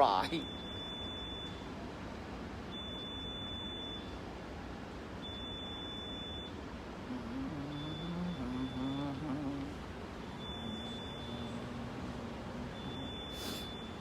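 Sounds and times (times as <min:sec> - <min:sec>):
street background noise: 0:00.0 - 0:14.0
electronic alarm beeping: 0:00.3 - 0:01.7, 0:02.7 - 0:04.2, 0:05.2 - 0:14.0
lower pitched alarm tone: 0:05.2 - 0:14.0.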